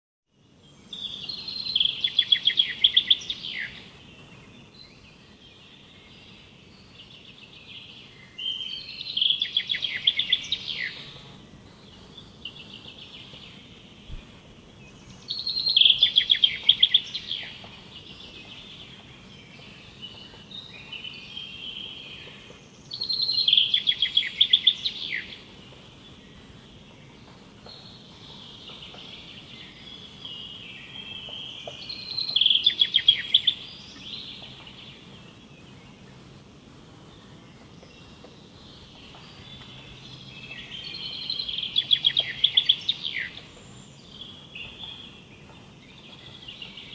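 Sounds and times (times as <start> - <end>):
bird singing fast trill: 0.6 - 14.2, 14.8 - 25.6, 27.7 - 36.0, 38.0 - 46.9
soft bird calls: 37.1 - 46.9.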